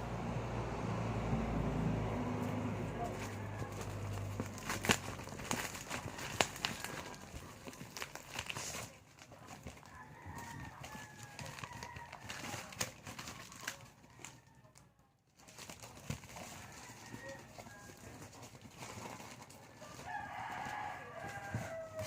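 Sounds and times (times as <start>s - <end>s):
handling clicks and rustles: 2.3s - 22.0s
rooster crowing: 2.5s - 7.5s, 9.8s - 12.8s, 13.9s - 14.9s, 16.3s - 18.5s, 19.7s - 22.0s.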